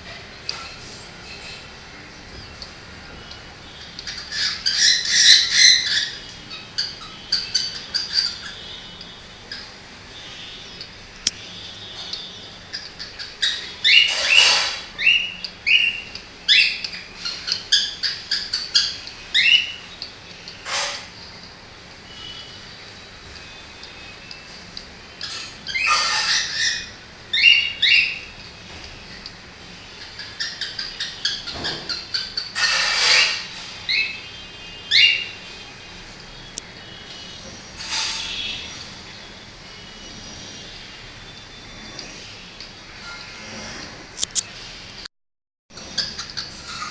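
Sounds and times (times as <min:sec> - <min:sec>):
cockatiel screeching: 0:25.2 - 0:28.2, 0:30.2 - 0:34.2.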